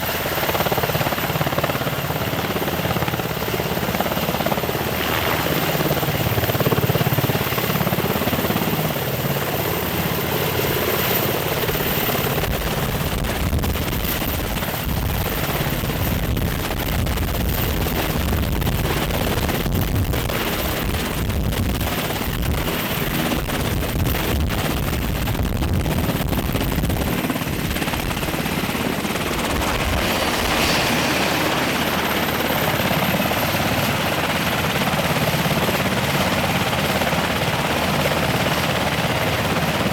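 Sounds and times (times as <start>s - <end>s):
helicopter rotor thudding: 11.5s - 36.2s
turbine engine noise: 11.6s - 34.2s.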